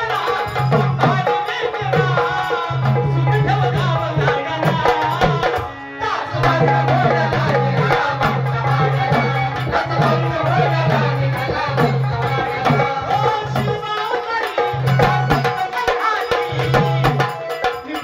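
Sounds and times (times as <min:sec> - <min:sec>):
hand drum beating: 0:06.4 - 0:18.0.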